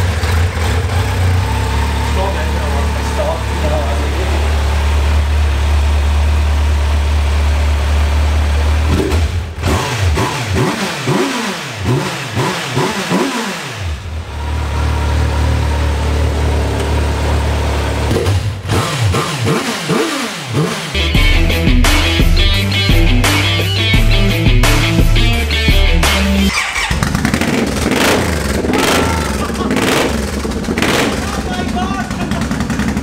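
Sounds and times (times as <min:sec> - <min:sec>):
motorcycle engine idling: 0:00.0 - 0:09.6, 0:26.5 - 0:33.0
motorcycle engine revving: 0:00.0 - 0:21.1, 0:26.4 - 0:33.0.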